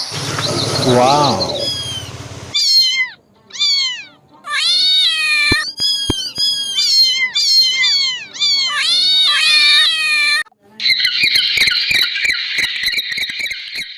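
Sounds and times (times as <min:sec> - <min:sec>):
kittens mewing: 0:00.4 - 0:10.5.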